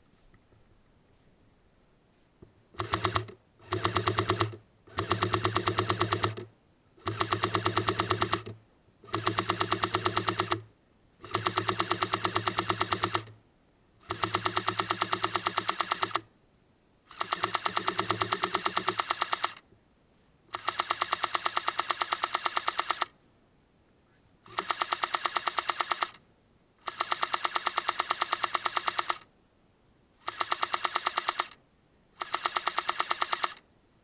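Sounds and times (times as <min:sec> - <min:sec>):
gearbox motor whirring: 0:02.8 - 0:08.5
airsoft gun firing rapid bursts: 0:02.8 - 0:13.3, 0:14.1 - 0:16.2, 0:17.1 - 0:19.6, 0:20.5 - 0:23.1, 0:24.5 - 0:26.2, 0:26.9 - 0:29.2, 0:30.2 - 0:31.6, 0:32.2 - 0:33.6.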